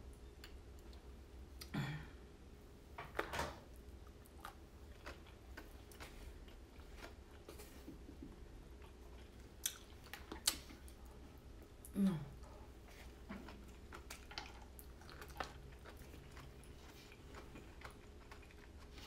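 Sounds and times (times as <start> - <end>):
person chewing: 4.0 - 19.0.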